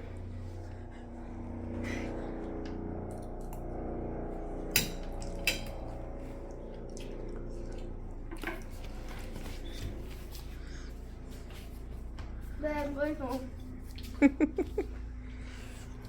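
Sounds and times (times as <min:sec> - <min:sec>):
low hum: 0:00.0 - 0:16.0.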